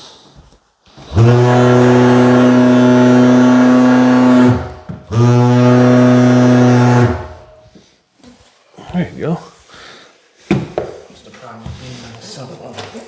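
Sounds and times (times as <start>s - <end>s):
tile vibrator buzzing: 1.0s - 7.7s.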